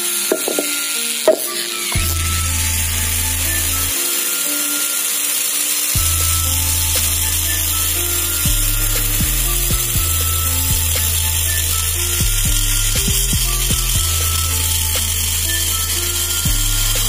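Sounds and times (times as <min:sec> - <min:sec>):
raspy buzz: 0:00.0 - 0:17.0
dance music with heavy bass: 0:06.0 - 0:17.0.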